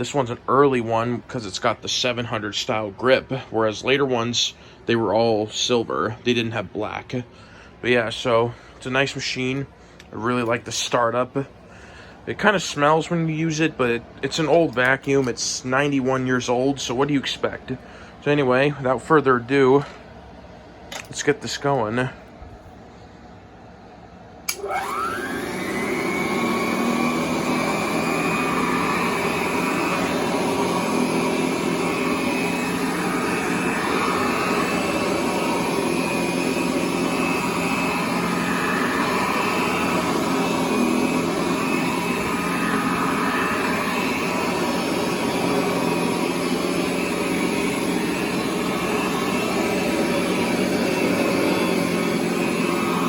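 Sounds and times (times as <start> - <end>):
vacuum cleaner motor whine: 24.5 - 53.0.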